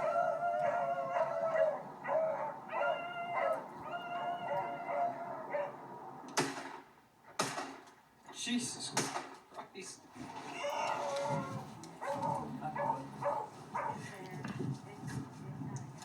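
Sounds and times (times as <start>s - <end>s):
hounds baying: 0.0s - 6.0s, 10.4s - 14.1s.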